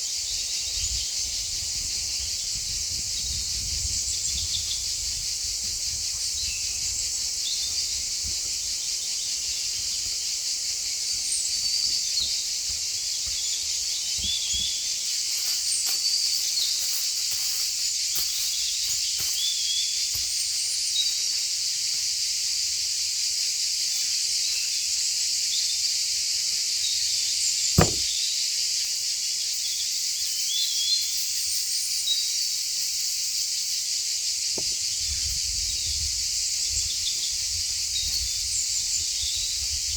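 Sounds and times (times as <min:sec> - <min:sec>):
insects chorus: 0:00.0 - 0:28.0, 0:28.9 - 0:39.9
sharp knock: 0:27.8 - 0:28.1.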